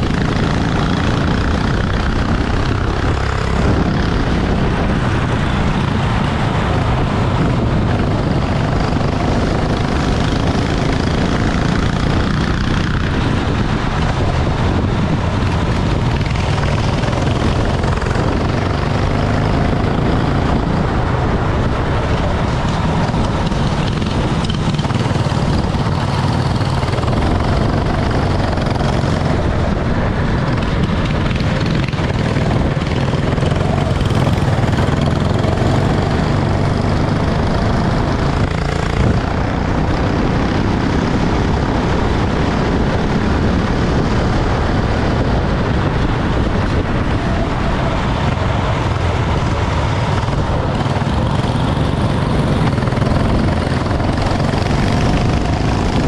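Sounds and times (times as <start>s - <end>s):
go-kart engines droning: 0.0s - 56.0s.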